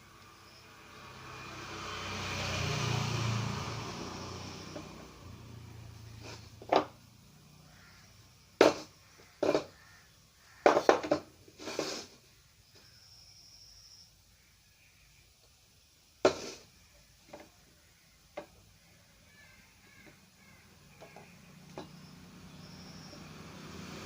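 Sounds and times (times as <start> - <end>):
vehicle passing: 0.0 - 8.5, 20.4 - 24.0
sharp knocks and clicks: 10.6 - 11.3.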